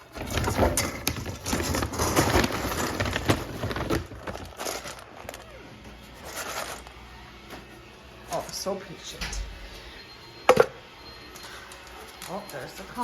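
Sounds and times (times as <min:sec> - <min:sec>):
dry kibble rattling in bowl: 0:00.0 - 0:05.5, 0:06.2 - 0:06.9.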